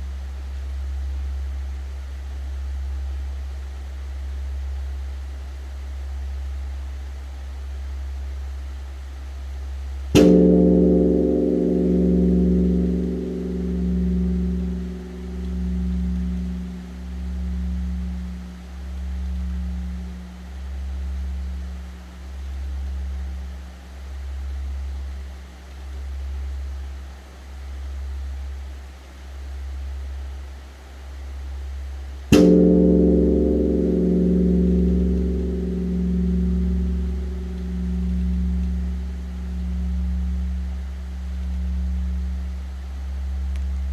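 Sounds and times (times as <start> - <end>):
large bronze temple bell ringing: 10.2 - 24.0, 32.3 - 43.9.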